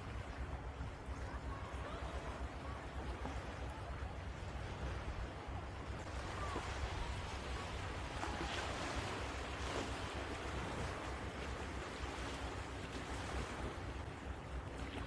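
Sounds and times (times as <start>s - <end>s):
wind rumbling on microphone: 0.0s - 15.0s
surf washing onto beach: 4.8s - 13.8s.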